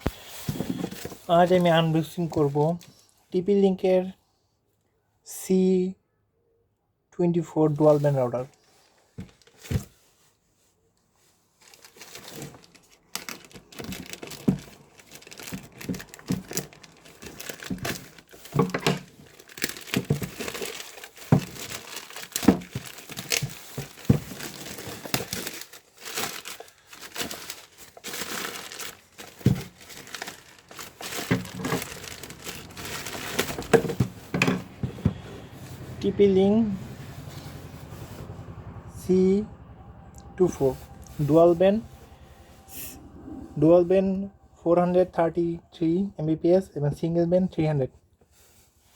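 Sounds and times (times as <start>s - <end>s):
plastic wrap crinkling: 8.6s - 9.9s, 11.5s - 35.9s
packaging tearing: 11.6s - 34.4s.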